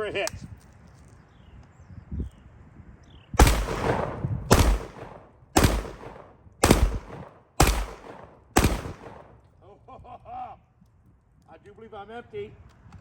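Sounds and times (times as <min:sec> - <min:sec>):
shotgun shots echoing: 0:03.4 - 0:09.4.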